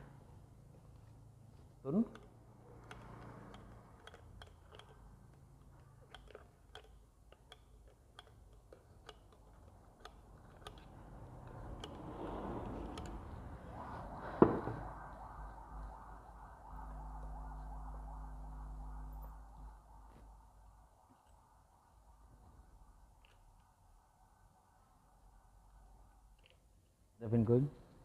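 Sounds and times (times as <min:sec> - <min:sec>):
small metal parts clicking: 0:02.1 - 0:13.3
sharp knock: 0:14.4 - 0:15.0.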